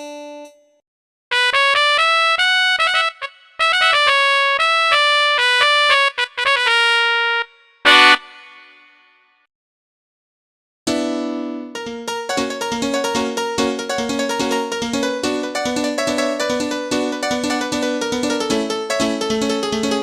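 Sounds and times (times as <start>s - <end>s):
synthesizer melodic phrase: 7.9s - 8.9s, 11.5s - 20.0s
loud synthesizer chord: 7.9s - 9.0s.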